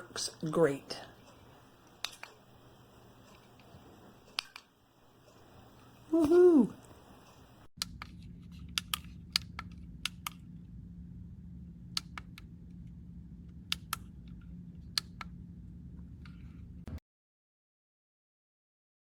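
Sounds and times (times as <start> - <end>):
steady low hum: 0.0 - 17.0
sharp clicks: 1.3 - 2.4.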